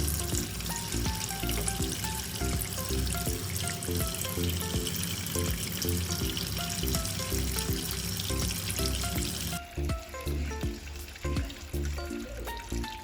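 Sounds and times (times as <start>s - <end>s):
background music: 0.0s - 13.0s
fountain water trickling: 0.0s - 13.0s.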